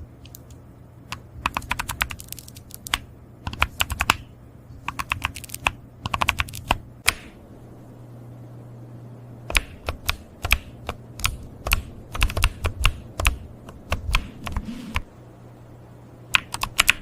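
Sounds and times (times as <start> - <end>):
steady low hum: 0.0 - 17.0
keyboard key clicks: 0.2 - 7.3, 9.5 - 15.1, 16.3 - 17.0.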